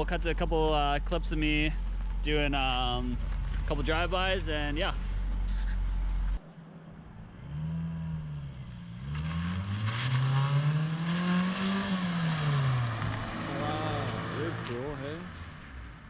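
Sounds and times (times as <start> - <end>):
car driving by: 7.2 - 16.0.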